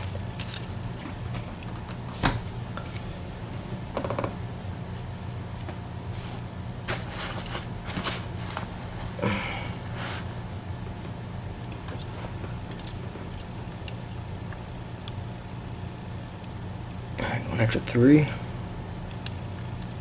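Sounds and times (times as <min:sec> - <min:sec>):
low room hum: 0:00.0 - 0:20.0
person sniffing: 0:09.1 - 0:10.3.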